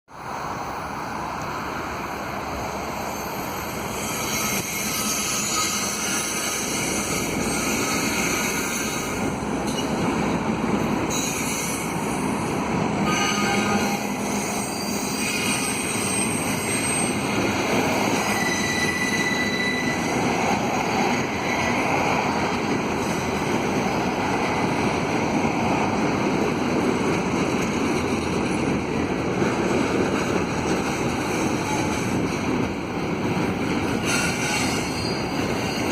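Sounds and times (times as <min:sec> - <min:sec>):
rumble of freight cars: 0:00.1 - 0:35.9
train wheels squealing on rails: 0:01.6 - 0:10.1, 0:10.8 - 0:24.9, 0:30.2 - 0:35.9.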